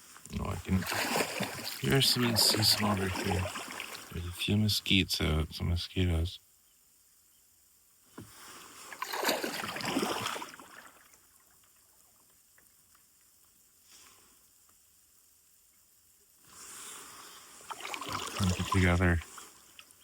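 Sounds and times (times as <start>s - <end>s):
paddle splashing through water: 0.7s - 4.2s, 8.3s - 11.2s, 17.6s - 19.6s
paddle knock: 0.8s - 4.1s
water dripping: 17.7s - 20.0s.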